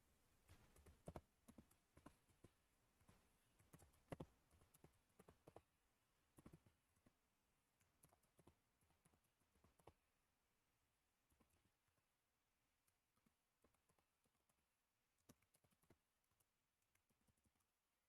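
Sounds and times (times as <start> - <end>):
keyboard typing: 0.6 - 5.7, 6.3 - 10.1, 11.3 - 12.1, 12.8 - 17.9.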